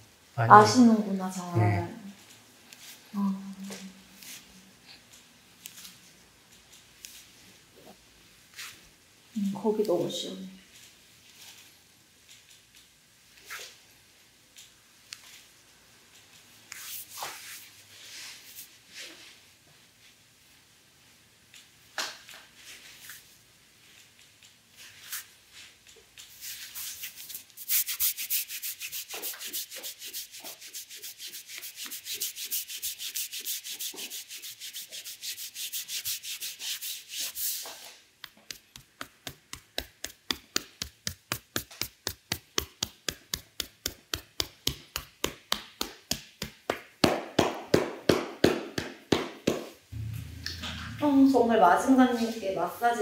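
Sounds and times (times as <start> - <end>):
hands rubbing over skin: 16.7 - 19.1, 26.2 - 46.9.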